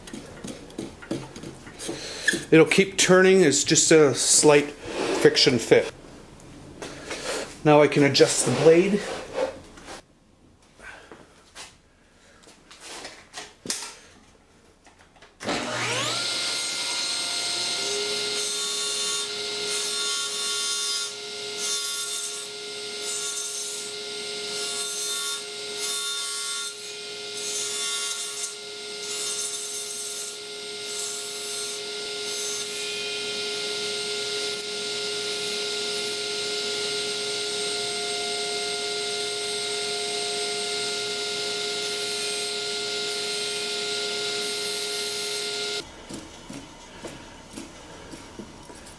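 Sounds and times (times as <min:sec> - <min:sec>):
table saw motor running: 0:15.4 - 0:45.9
saw blade cutting wood: 0:15.4 - 0:48.9.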